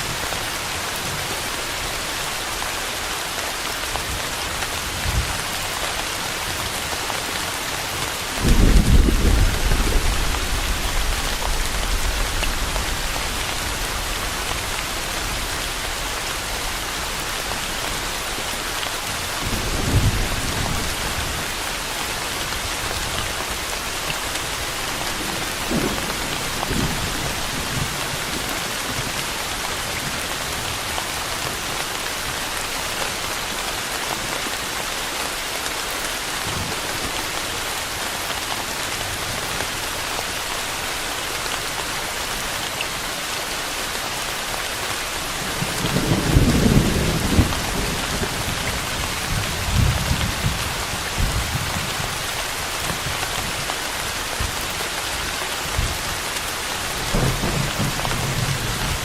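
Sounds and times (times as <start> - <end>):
steady rain: 0.0 - 59.0
distant thunder rumbling: 8.3 - 17.2.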